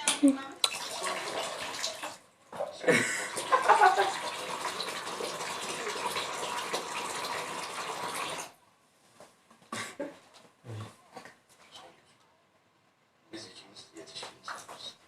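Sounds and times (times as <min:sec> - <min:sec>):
running water: 0:00.6 - 0:08.5.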